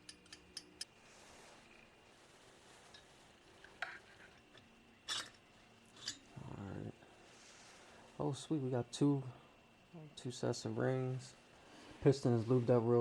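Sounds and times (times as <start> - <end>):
metal engine parts clicking: 0.0 - 0.9
faint room noise: 0.0 - 13.0.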